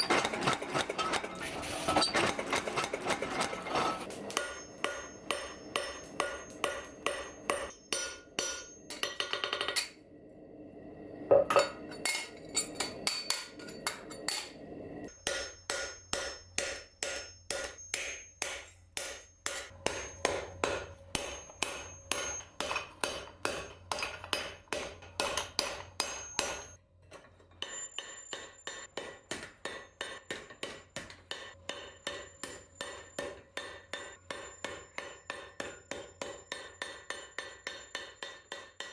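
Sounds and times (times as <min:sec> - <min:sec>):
hammer beating steel: 0:00.0 - 0:10.0, 0:11.3 - 0:26.8, 0:27.6 - 0:38.9.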